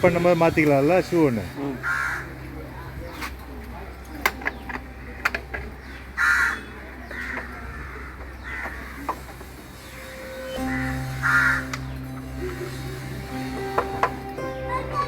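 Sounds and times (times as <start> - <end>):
crows cawing: 1.7 - 2.4, 6.2 - 9.4, 10.6 - 11.8.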